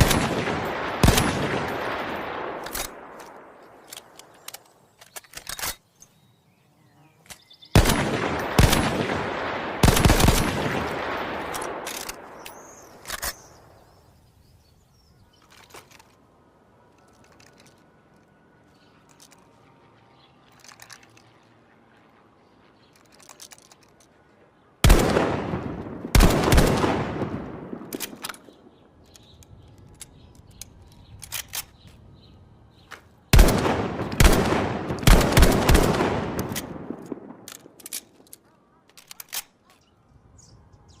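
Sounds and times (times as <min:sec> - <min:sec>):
rifle shots echoing: 0:00.0 - 0:04.1, 0:07.8 - 0:13.7, 0:24.8 - 0:28.6, 0:33.3 - 0:37.9
sharp clicks: 0:00.0 - 0:06.2, 0:09.8 - 0:13.8, 0:27.7 - 0:32.0.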